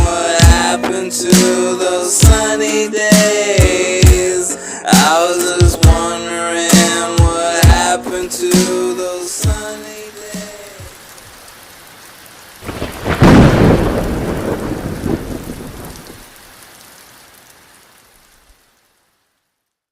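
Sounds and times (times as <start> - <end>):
steady rain: 0.0 - 19.9
thunderclap rumbling: 12.6 - 16.3.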